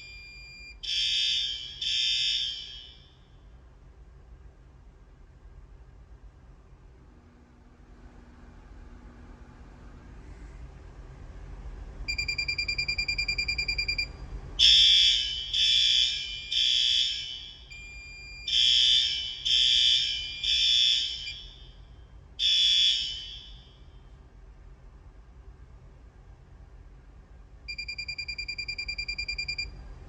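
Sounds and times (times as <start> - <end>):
rapidly pulsing high electronic beep: 0.0 - 2.9, 12.1 - 21.6, 27.7 - 29.7
fire alarm horns blasting: 0.0 - 3.3, 12.1 - 23.9, 27.7 - 29.7.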